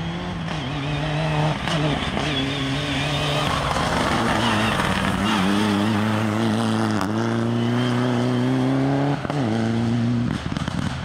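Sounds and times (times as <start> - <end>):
rally car engine pulling hard: 0.0 - 11.0.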